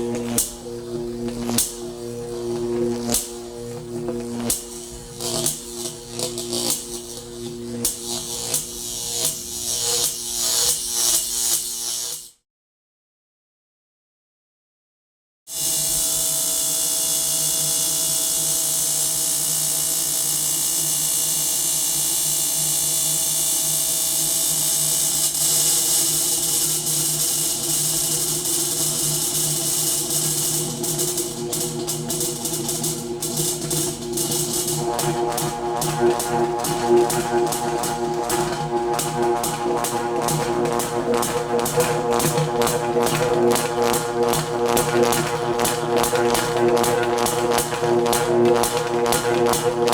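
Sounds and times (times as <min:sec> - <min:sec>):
electric whirring hum: 0:00.0 - 0:11.8, 0:25.2 - 0:49.9
buzzy low synth drone: 0:00.0 - 0:12.1, 0:25.0 - 0:49.9
hissing pulse: 0:26.4 - 0:49.9.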